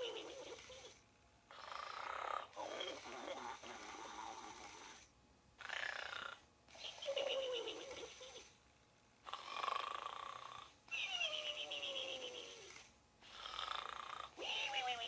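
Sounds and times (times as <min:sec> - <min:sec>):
toy pig snoring: 0:00.0 - 0:08.6, 0:09.2 - 0:15.0.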